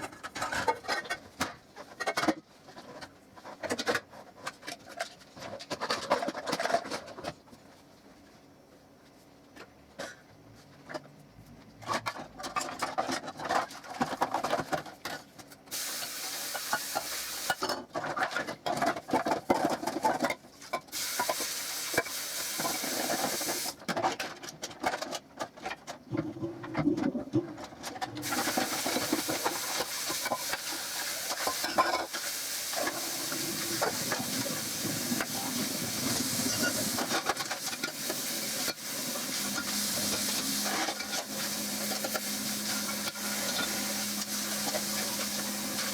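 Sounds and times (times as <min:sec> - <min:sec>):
steady hiss: 0:15.7 - 0:17.6, 0:20.9 - 0:23.8, 0:28.2 - 0:45.9
dishes and utensils clattering: 0:27.9 - 0:45.9.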